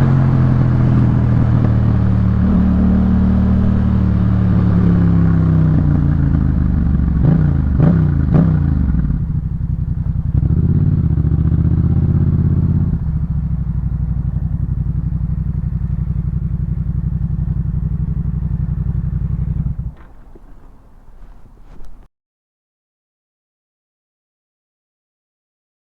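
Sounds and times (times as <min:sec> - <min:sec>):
motorcycle engine idling: 0:03.6 - 0:22.1
exhaust pops: 0:15.8 - 0:22.1.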